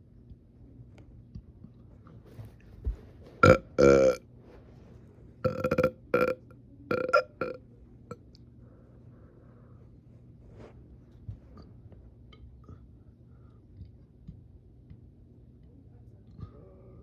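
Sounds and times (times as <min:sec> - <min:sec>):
person burping loudly: 0:03.4 - 0:04.2, 0:05.4 - 0:07.6.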